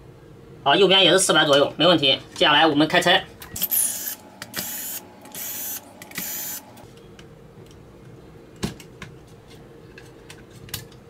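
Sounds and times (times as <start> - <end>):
electric screwdriver whirring: 3.6 - 6.7.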